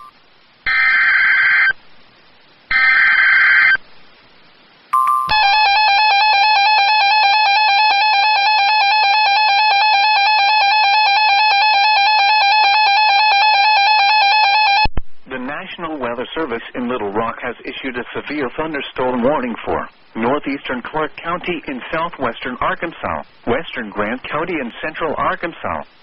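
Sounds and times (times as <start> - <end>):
data burst tones: 0.0 - 1.8, 4.9 - 14.9
steady alert attention tone: 4.9 - 6.3.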